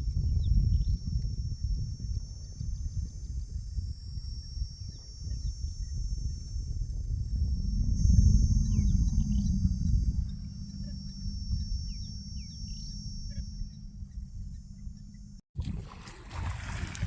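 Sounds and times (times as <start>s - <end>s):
insects trilling: 0.0s - 15.4s
low rumble: 6.3s - 15.4s
bird chirps: 8.6s - 15.4s.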